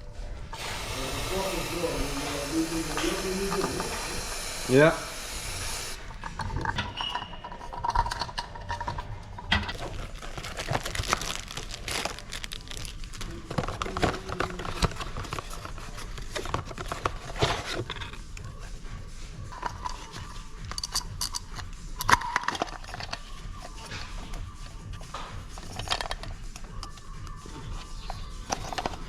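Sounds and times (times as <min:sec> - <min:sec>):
hand tools clicking and clattering: 0:00.0 - 0:11.3, 0:12.8 - 0:29.0.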